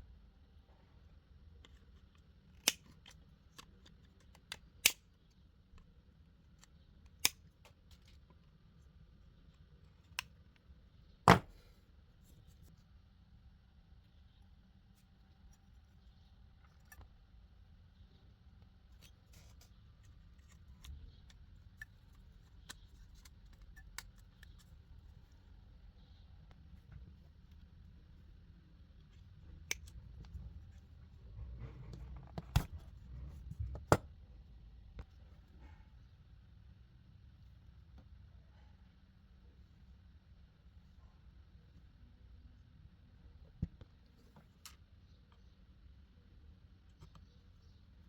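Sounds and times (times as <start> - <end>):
faint low hum: 0.0 - 48.0
small parts clicking and snapping: 1.6 - 5.0.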